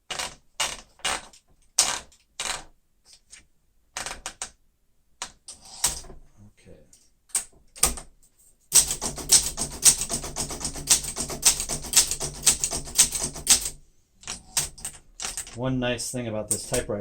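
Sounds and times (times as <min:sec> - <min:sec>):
manual typewriter typing: 0:05.5 - 0:06.2, 0:07.3 - 0:08.1, 0:08.7 - 0:15.7, 0:16.5 - 0:17.0.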